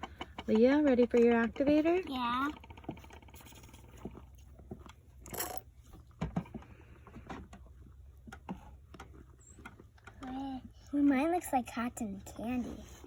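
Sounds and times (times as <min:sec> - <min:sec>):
slime scraping bowl: 0:07.6 - 0:13.0.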